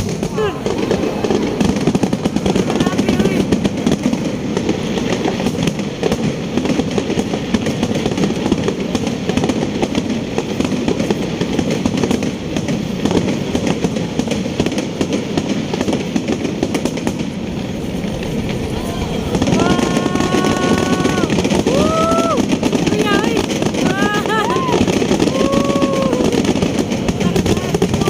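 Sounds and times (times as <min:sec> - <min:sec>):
fireworks crackling: 0:00.0 - 0:28.0.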